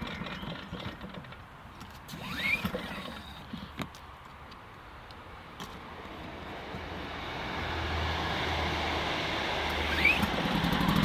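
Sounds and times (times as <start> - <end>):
short squeak: 2.2 - 3.4
generator engine humming: 6.0 - 11.0.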